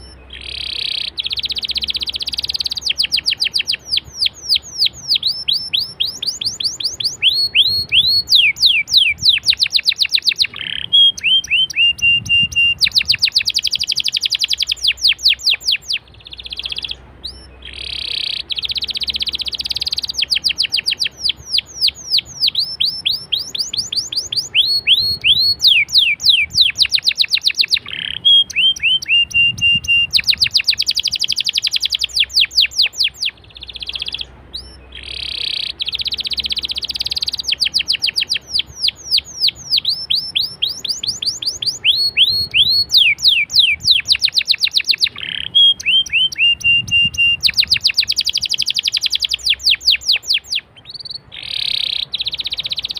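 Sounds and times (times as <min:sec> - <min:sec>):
canary singing: 0:00.0 - 0:52.9.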